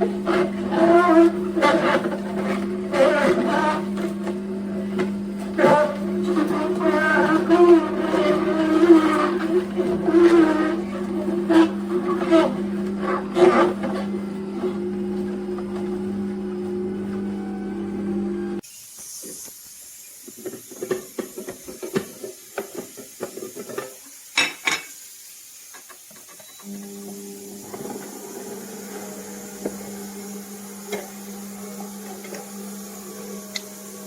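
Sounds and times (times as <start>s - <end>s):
juicer motor hum: 0.0s - 18.7s, 26.4s - 34.0s.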